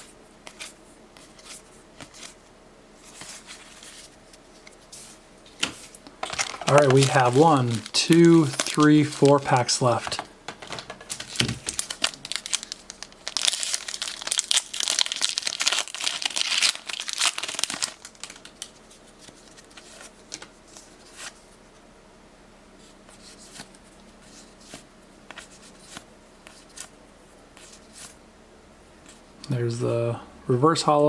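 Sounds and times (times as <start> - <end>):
foil wrapper tearing and crinkling: 6.0 - 10.1, 10.7 - 18.8.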